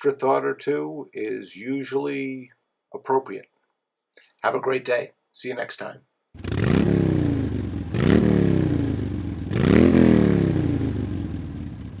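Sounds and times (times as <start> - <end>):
engine revving: 6.4 - 12.0.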